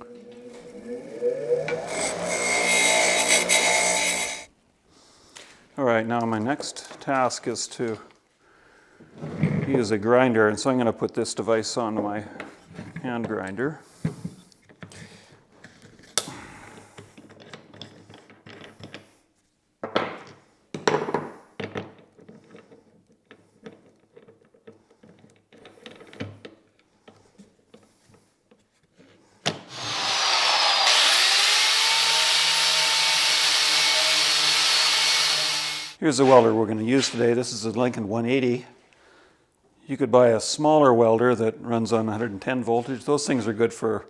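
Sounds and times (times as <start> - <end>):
hand grinder running: 0.0 - 4.5, 29.7 - 36.0.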